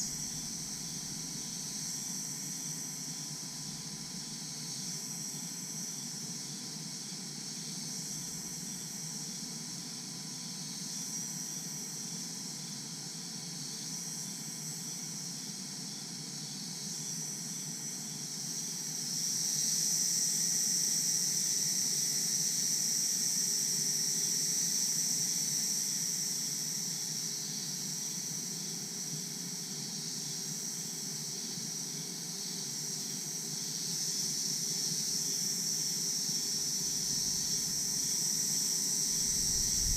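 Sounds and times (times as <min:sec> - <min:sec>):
crickets chirping drone: 0:00.0 - 0:39.9.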